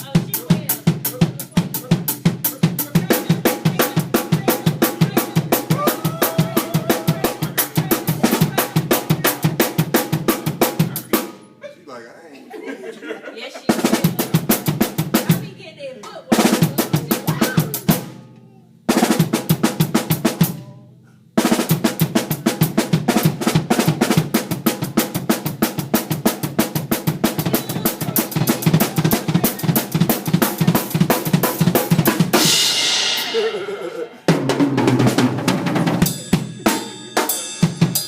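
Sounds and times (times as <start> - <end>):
kick drum: 0.1 - 11.0
cymbal crash: 32.4 - 33.7.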